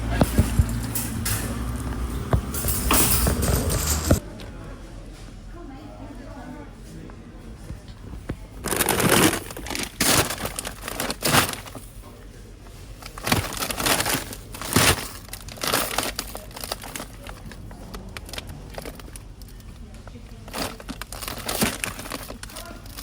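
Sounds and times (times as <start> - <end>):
rustling crinkling noise: 7.5 - 23.0.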